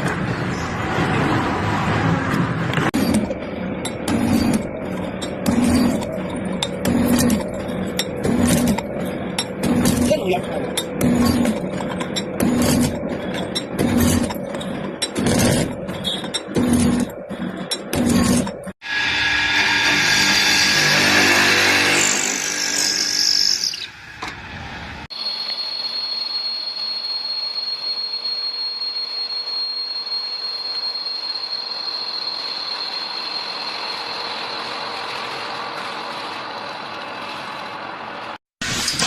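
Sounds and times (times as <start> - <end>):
lathe running with high whine: 18.8 - 23.8, 25.1 - 38.4.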